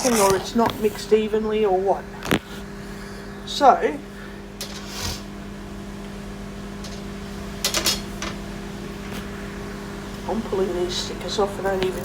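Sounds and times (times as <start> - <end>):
handling clicks and scrapes: 0.0 - 0.9
microwave oven humming: 0.0 - 12.0.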